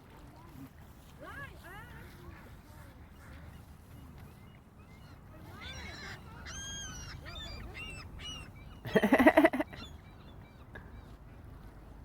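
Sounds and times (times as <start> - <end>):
gulls calling: 4.9 - 10.6.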